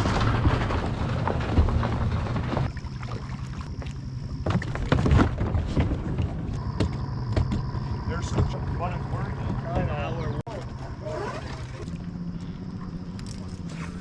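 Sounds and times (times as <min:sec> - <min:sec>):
gear and hull knocking: 0:00.0 - 0:11.0.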